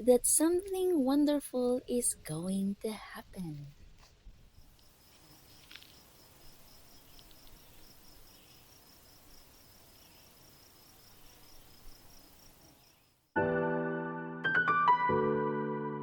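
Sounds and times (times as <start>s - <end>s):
insect chirping: 1.8s - 13.4s.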